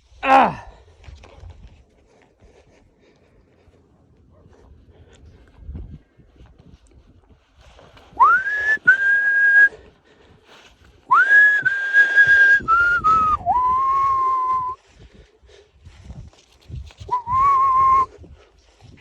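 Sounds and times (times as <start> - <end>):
webbing whistling in wind: 8.1 - 9.7, 11.1 - 14.8, 17.0 - 18.2.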